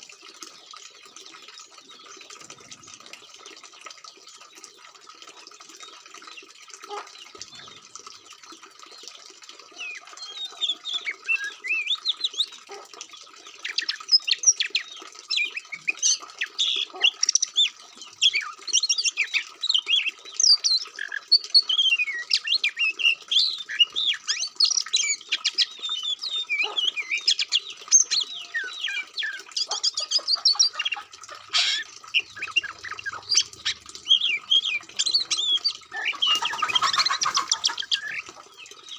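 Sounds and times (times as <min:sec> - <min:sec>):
bird singing chirps and whistles: 0:09.8 - 0:12.5, 0:18.2 - 0:29.7, 0:31.6 - 0:37.0, 0:37.7 - 0:38.9.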